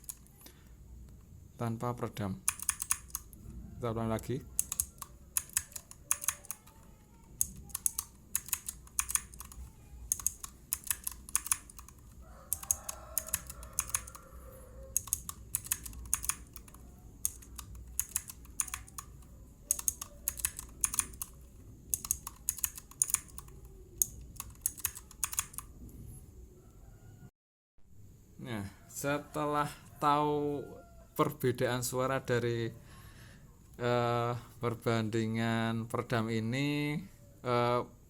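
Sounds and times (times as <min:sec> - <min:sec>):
mechanical keyboard keys clacking: 0:00.0 - 0:00.4, 0:02.4 - 0:03.4, 0:04.5 - 0:14.3, 0:14.9 - 0:25.7.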